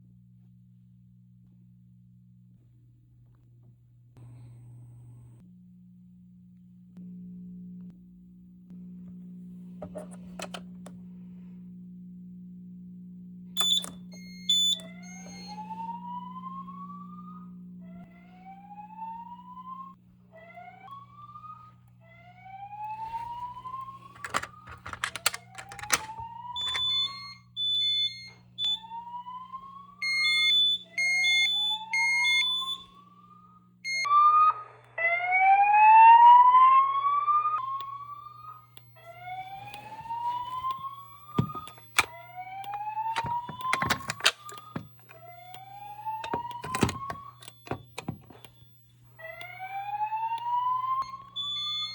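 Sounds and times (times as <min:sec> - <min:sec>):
fire alarm horn beeps: 0:13.6 - 0:34.5, 0:37.5 - 0:51.9
sharp clicks: 0:24.1 - 0:28.8, 0:37.6 - 0:51.9
rising whoop alarm tone: 0:25.2 - 0:51.9.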